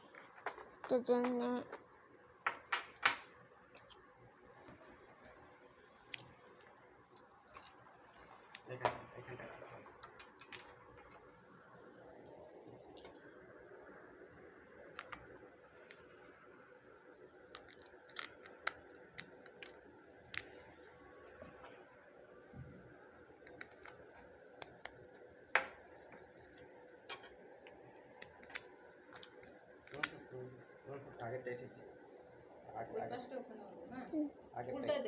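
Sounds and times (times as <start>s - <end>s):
faint steady hum: 0.0s - 35.0s
plastic parts clicking: 23.5s - 24.0s.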